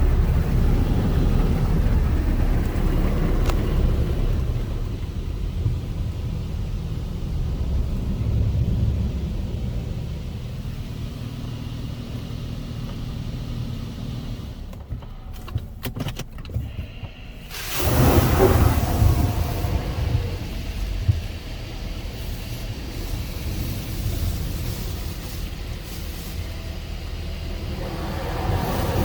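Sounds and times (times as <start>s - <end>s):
low steady rumble: 0.0s - 29.0s
high-pressure spray hitting car: 17.5s - 27.6s.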